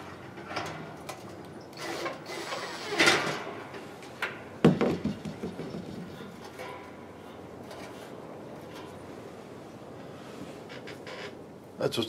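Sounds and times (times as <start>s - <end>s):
sharp knocks: 4.6s - 6.2s.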